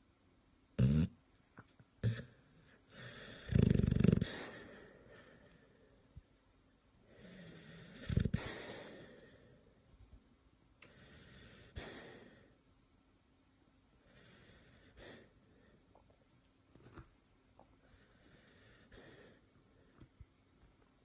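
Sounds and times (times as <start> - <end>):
person snoring: 3.0 - 4.6.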